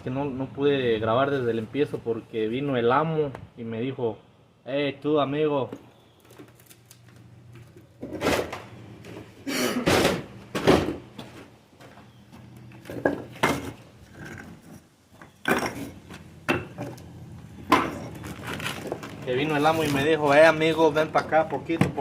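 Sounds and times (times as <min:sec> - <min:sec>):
stones knocking: 0:12.7 - 0:19.3.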